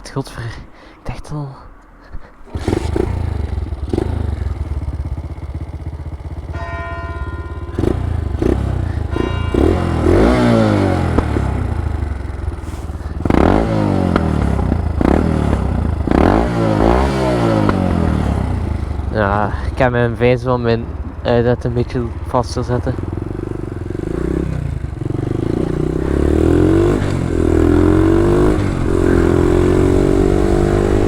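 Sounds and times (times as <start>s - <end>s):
moped engine revving: 2.5s - 31.0s
brief steady tone: 6.5s - 11.4s.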